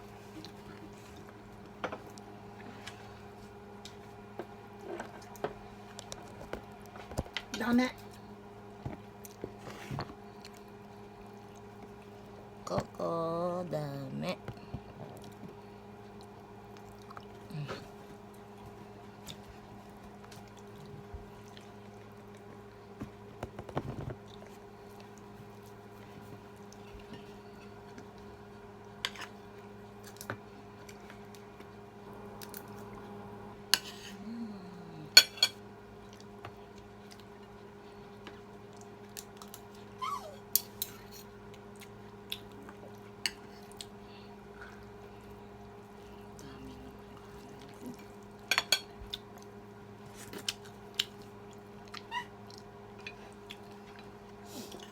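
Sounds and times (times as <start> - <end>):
low electrical hum: 0.0 - 54.9
cutlery clinking against plates: 48.5 - 48.9.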